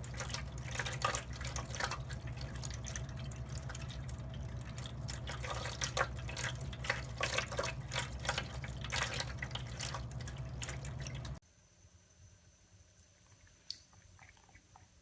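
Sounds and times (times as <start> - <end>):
cat lapping water: 0.0 - 11.4, 13.3 - 15.0
water trickling from tap: 0.0 - 11.4.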